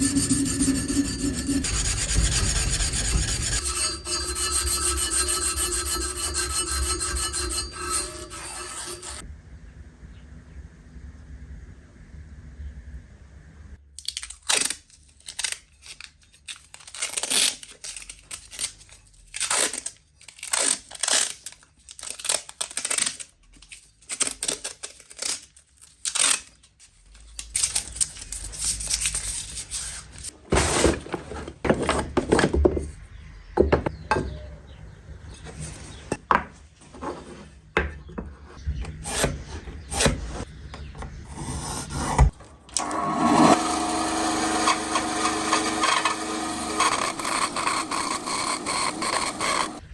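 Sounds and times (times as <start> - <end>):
short scraping strokes: 0.0 - 9.2.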